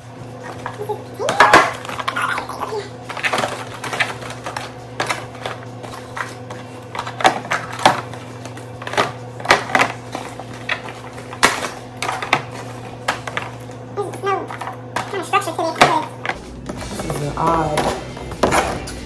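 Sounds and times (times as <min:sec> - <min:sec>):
steady low hum: 0:00.0 - 0:19.0
grocery items clicking and knocking: 0:00.3 - 0:19.0.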